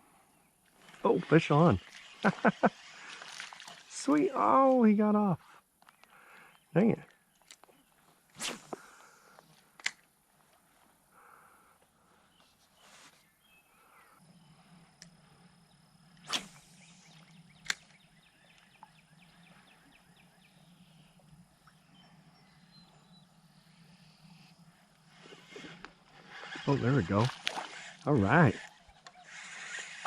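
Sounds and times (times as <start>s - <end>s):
fishing rod cast swish: 8.4s - 8.8s, 16.2s - 17.9s.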